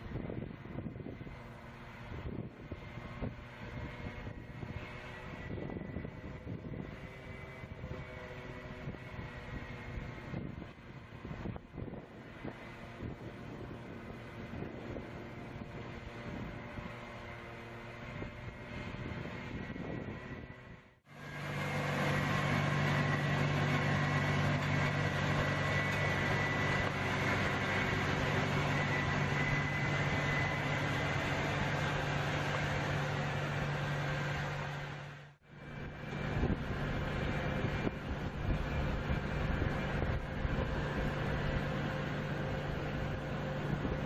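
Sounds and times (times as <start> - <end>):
heavy machinery engine hum: 0.0 - 44.0.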